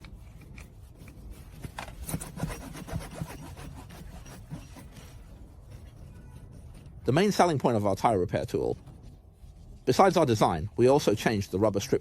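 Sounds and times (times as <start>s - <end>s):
tire repair tool rasping: 0.0s - 6.0s.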